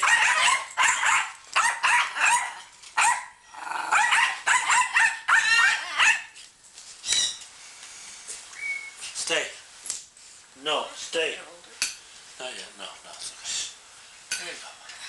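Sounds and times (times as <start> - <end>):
puppy barking and yipping: 0.0 - 6.4.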